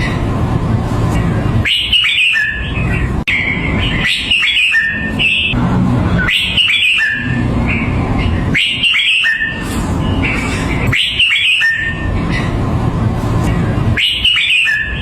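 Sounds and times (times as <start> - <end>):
bird singing whistled phrases: 1.6 - 5.6, 6.2 - 12.0, 14.0 - 15.0.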